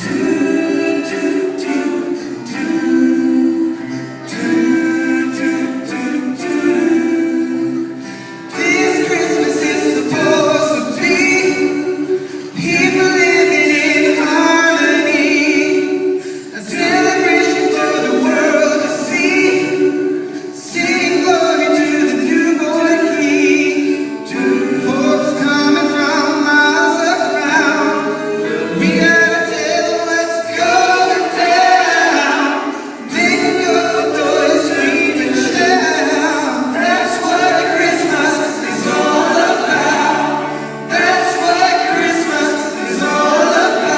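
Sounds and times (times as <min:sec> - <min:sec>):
choir singing unaccompanied: 0:00.0 - 0:43.9.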